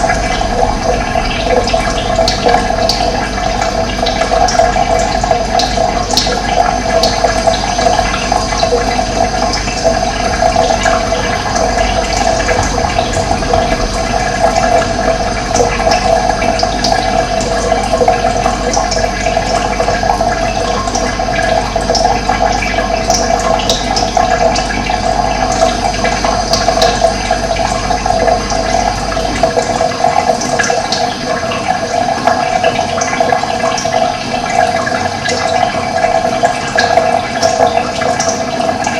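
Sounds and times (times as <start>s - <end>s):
low rumble: 0.0s - 5.2s, 9.9s - 19.0s
running water rushing: 0.0s - 38.9s.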